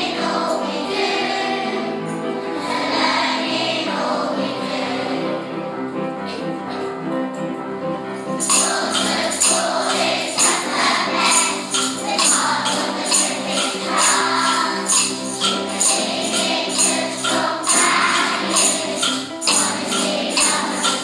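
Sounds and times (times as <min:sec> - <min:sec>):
voices singing: 0:00.0 - 0:05.4, 0:08.4 - 0:21.0
tambourine jingling: 0:01.5 - 0:03.0, 0:07.3 - 0:21.0.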